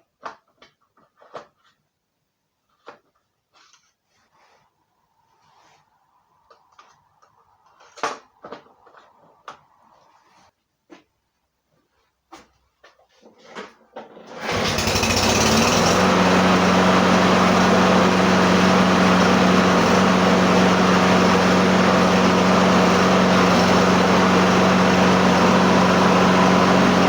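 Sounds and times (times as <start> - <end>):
lawn mower engine revving: 14.3 - 27.0.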